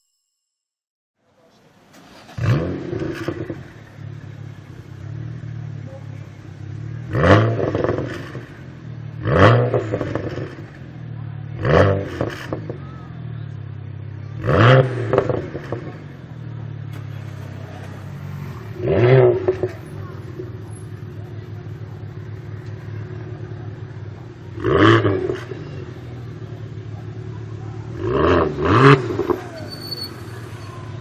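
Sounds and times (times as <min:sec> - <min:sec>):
car engine idling and revving: 0:01.3 - 0:31.0
exhaust pops and crackles: 0:14.4 - 0:29.5.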